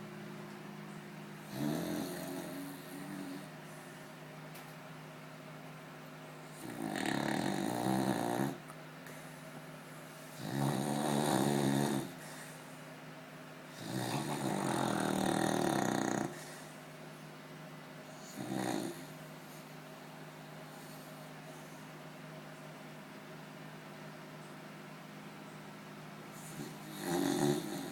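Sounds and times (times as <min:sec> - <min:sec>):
dog snoring: 0:01.4 - 0:03.5, 0:06.4 - 0:08.7, 0:10.3 - 0:12.6, 0:13.7 - 0:16.7, 0:18.1 - 0:19.7, 0:26.3 - 0:27.9.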